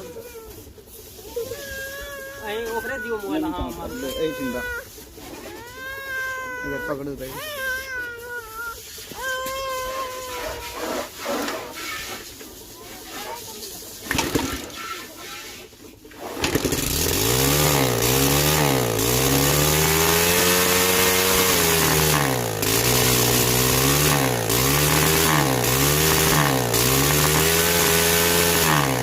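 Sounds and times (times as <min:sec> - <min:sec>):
motorcycle engine revving: 0:14.1 - 0:14.8, 0:16.2 - 0:29.0.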